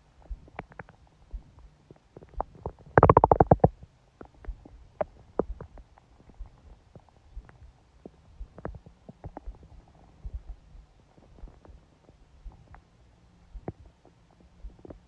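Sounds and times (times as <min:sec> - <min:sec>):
stomach growling and gurgling: 0:01.9 - 0:10.6.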